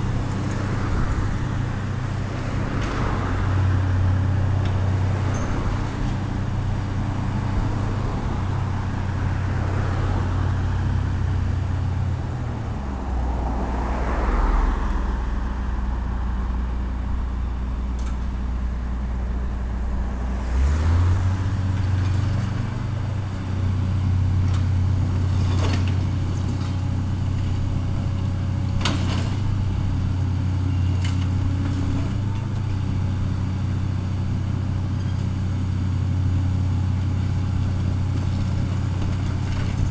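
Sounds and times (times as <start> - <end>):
excavator diesel engine running: 15.2 - 39.9.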